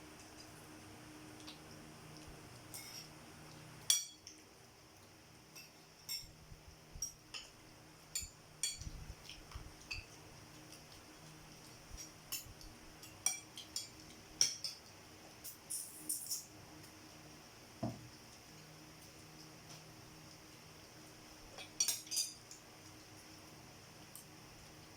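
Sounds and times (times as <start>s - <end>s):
forks clinking on plates: 2.7s - 3.1s, 3.9s - 4.3s, 12.0s - 16.5s, 21.6s - 22.5s.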